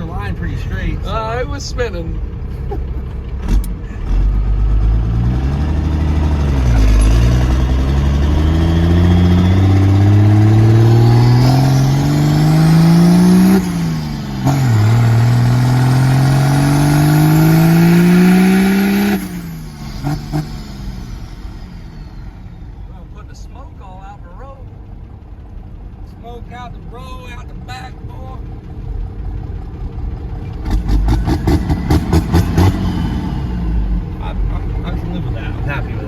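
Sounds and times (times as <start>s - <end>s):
diesel truck engine accelerating: 0.0s - 36.0s.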